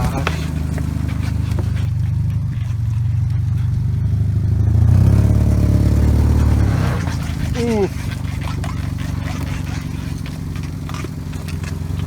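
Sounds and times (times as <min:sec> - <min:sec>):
car engine running low revs: 0:00.0 - 0:12.0.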